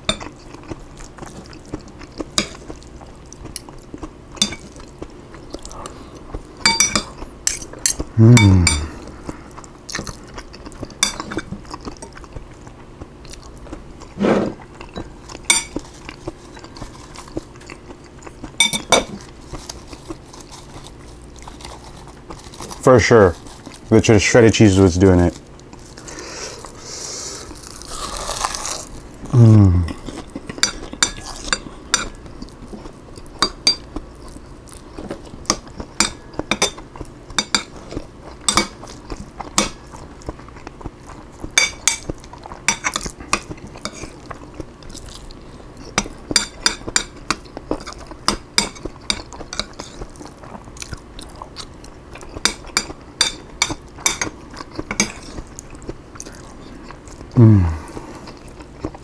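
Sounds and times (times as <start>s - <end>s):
crunching and chewing: 0.0s - 59.0s
cutlery and dishes clinking: 4.4s - 4.8s, 6.6s - 8.9s, 11.0s - 11.6s, 14.9s - 15.9s, 18.6s - 19.2s, 30.5s - 32.2s, 38.4s - 38.8s, 45.9s - 50.0s, 52.3s - 55.4s.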